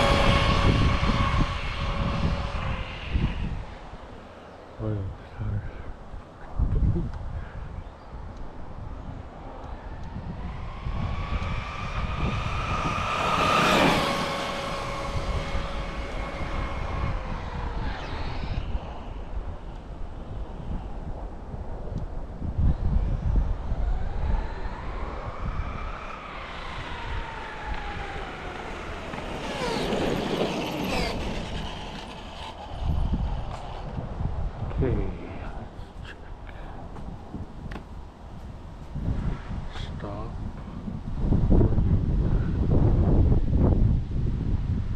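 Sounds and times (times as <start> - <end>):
rc car motor whine: 0.0 - 4.4, 9.4 - 21.6, 22.8 - 34.6
wind rumble on microphone: 0.0 - 44.9.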